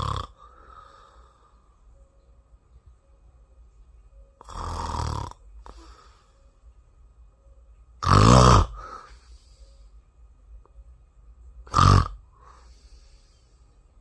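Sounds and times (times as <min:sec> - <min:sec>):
loud snores: 0:00.0 - 0:00.5, 0:04.4 - 0:06.0, 0:08.0 - 0:09.0, 0:11.7 - 0:12.6.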